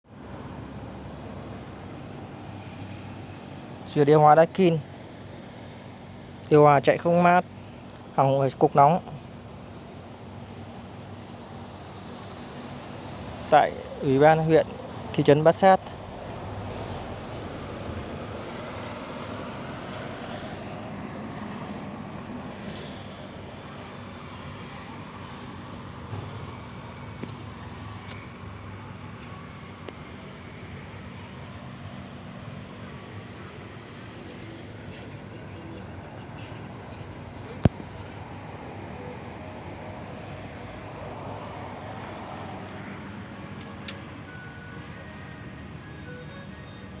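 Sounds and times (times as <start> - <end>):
air conditioner unit humming: 0.2 - 18.6.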